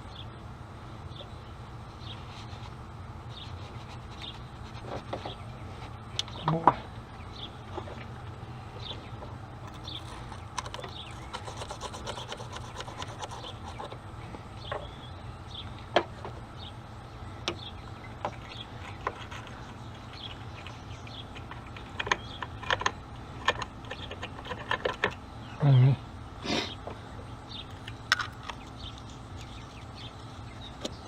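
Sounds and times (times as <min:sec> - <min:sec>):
steady low hum: 0:00.0 - 0:31.0
scrubbing a battery terminal: 0:02.0 - 0:06.4, 0:09.0 - 0:14.0, 0:17.5 - 0:25.2.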